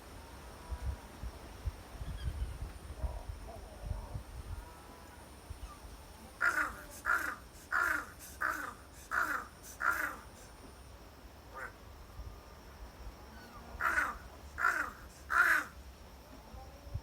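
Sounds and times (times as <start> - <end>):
crow hoarse calls: 6.4 - 10.5, 11.5 - 11.8, 13.4 - 15.8.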